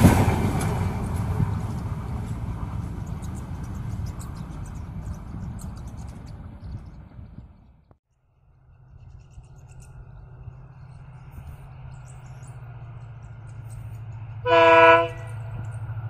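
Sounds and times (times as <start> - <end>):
diesel locomotive engine drone: 0.0 - 16.0
train horn blast: 14.4 - 15.5.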